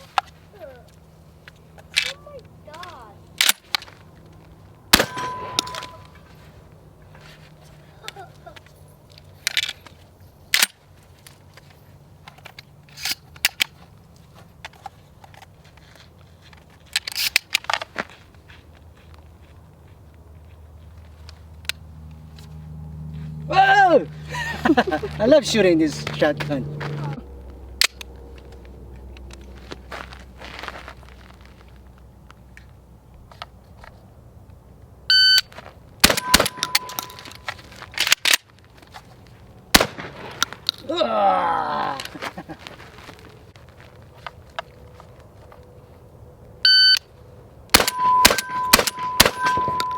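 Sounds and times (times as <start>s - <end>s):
sharp cracks: 3.4s - 4.0s, 4.9s - 6.2s, 36.0s - 38.6s, 39.7s - 41.0s, 47.7s - 49.9s
loud electronic beep: 5.0s - 6.1s, 36.1s - 37.4s, 47.8s - 49.9s.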